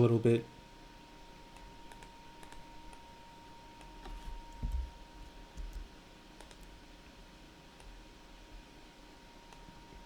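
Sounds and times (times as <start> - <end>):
computer mouse and keyboard clicks: 3.8 - 4.9, 5.6 - 6.8.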